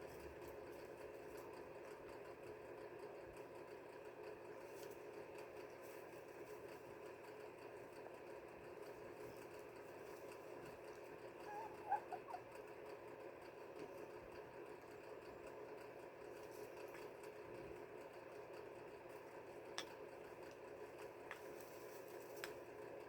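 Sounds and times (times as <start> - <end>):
faint steady hum: 0.0 - 23.0
small animal squeaky calls: 11.4 - 12.6.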